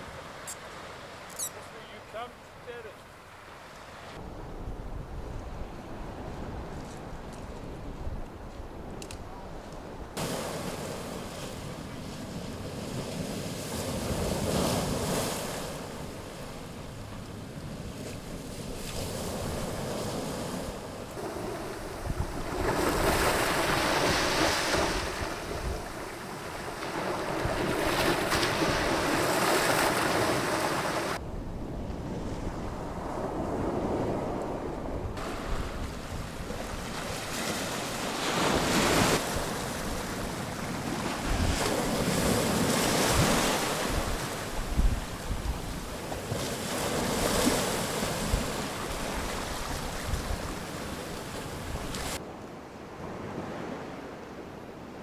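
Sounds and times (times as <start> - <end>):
sea waves breaking on shore: 0.0 - 4.4, 9.5 - 55.0
wind buffeting microphone: 4.2 - 13.3, 17.7 - 37.5, 38.7 - 52.2.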